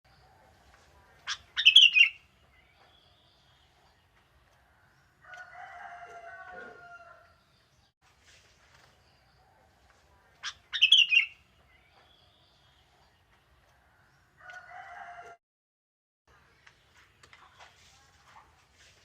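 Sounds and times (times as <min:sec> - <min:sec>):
rooster crowing: 0:05.2 - 0:07.3, 0:14.4 - 0:15.4.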